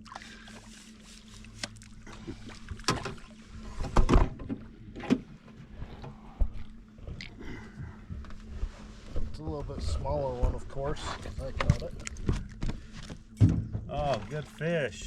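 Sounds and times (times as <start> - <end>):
steady low hum: 0.0 - 15.0
knocks and thumps on boat: 11.4 - 14.6.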